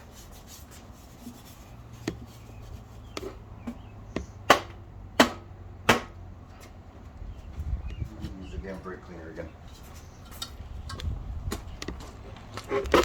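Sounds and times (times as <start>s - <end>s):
sharp knocks on hard object: 4.2s - 6.2s.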